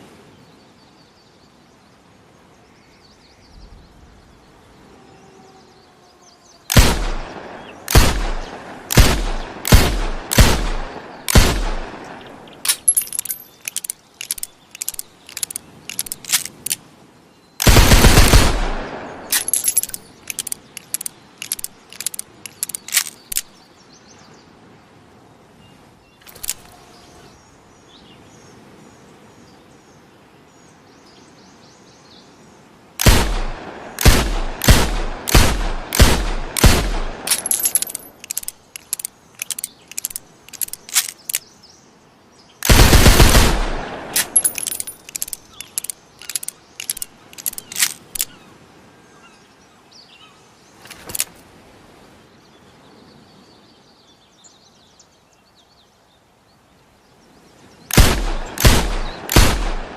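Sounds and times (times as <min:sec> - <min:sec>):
faint birds chirping: 0:00.0 - 0:59.9
revolver gunshots: 0:06.7 - 0:13.1, 0:17.6 - 0:19.9, 0:33.0 - 0:38.1, 0:42.6 - 0:45.0, 0:57.9 - 0:59.9.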